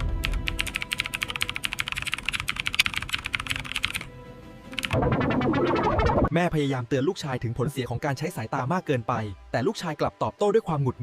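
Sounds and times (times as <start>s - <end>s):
computer keyboard keys clicking: 0.0s - 4.1s, 4.7s - 5.0s.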